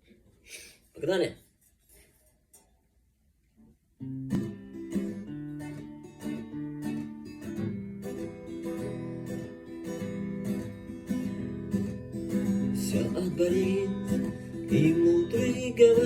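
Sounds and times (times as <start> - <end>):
acoustic guitar strumming chords: 4.0 - 16.0.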